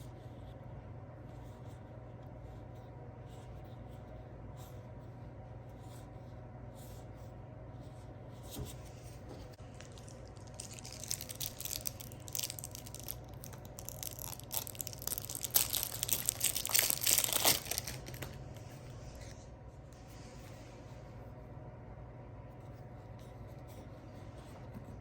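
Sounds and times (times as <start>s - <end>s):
packaging being torn and crinkled: 9.6s - 18.4s.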